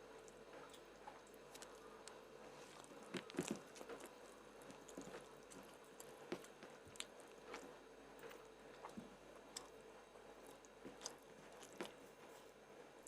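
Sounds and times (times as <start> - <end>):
person chewing: 0.2 - 7.8, 10.4 - 12.0.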